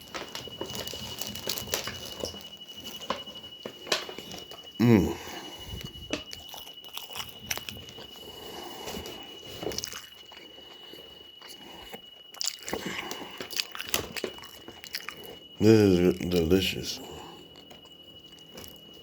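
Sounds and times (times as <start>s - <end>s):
person chewing burger: 3.9s - 15.6s, 17.1s - 19.0s.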